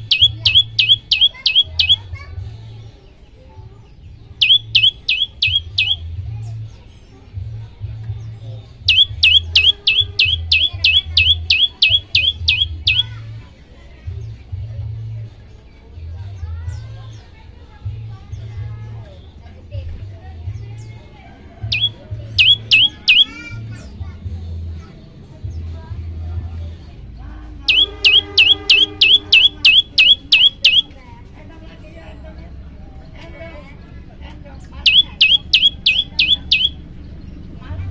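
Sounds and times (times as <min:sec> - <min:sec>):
bird singing sharp notes: 0:00.0 - 0:02.1, 0:04.4 - 0:06.1, 0:08.9 - 0:13.1, 0:21.7 - 0:23.4, 0:27.7 - 0:30.9, 0:34.8 - 0:36.8.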